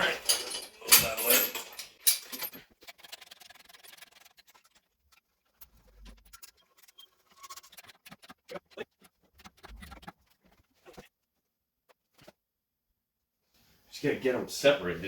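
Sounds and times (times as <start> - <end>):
tools clicking and knocking: 0.0 - 3.4.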